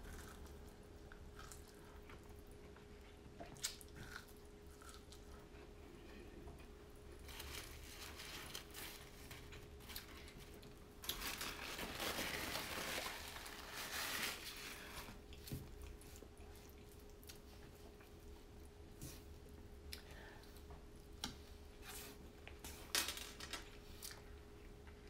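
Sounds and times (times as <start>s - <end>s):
chewing food: 0.0s - 5.7s.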